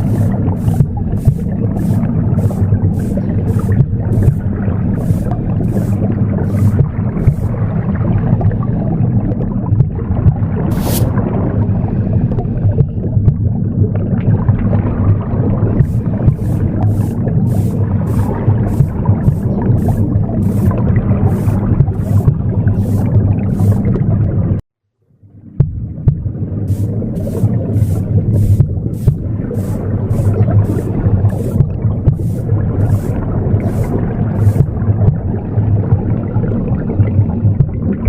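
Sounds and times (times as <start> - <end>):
broom sweeping: 0.0 - 7.6, 10.7 - 11.2, 15.8 - 24.0, 26.7 - 34.8
womb whooshing rumble: 0.0 - 8.7, 9.8 - 13.7, 15.8 - 24.6, 25.6 - 36.2.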